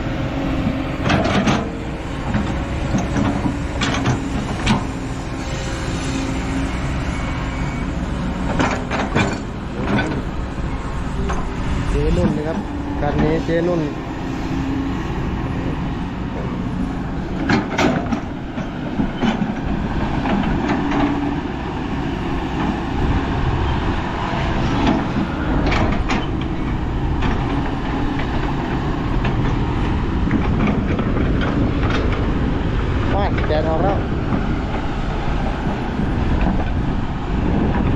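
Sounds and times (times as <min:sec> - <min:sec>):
diesel machinery running: 0:00.0 - 0:37.9.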